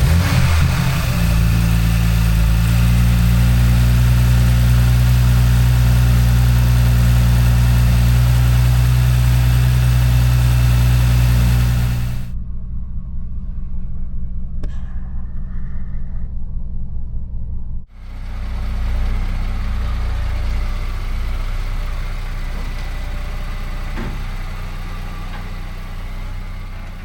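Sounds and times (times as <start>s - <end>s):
car engine idling: 0.0s - 12.4s, 17.9s - 27.0s.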